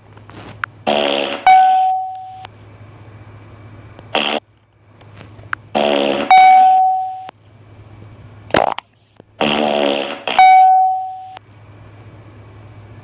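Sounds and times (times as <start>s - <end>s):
raspy fart sound: 0.8s - 1.7s, 4.1s - 4.4s, 5.7s - 6.6s, 8.5s - 8.8s, 9.4s - 10.6s
loud ringing tone: 1.1s - 2.5s, 6.0s - 7.3s, 10.2s - 11.4s.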